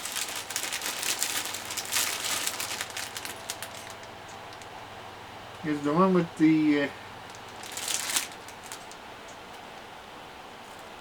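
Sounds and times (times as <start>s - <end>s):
plastic packaging crinkling: 0.0s - 4.7s, 7.2s - 9.1s.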